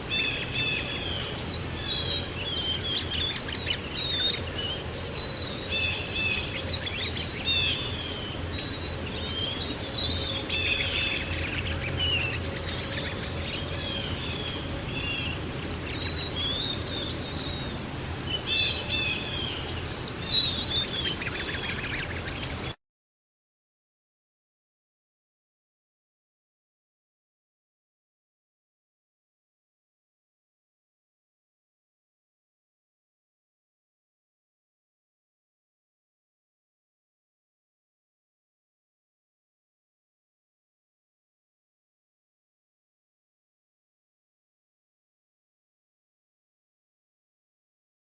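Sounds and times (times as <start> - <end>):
songbirds chirping and trilling: 0.0 - 22.8.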